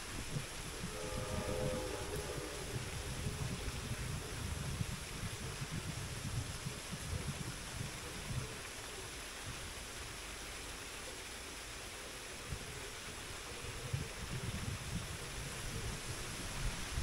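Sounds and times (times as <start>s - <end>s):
steady outdoor hiss: 0.0s - 17.0s
gusty low rumbling: 0.1s - 8.5s.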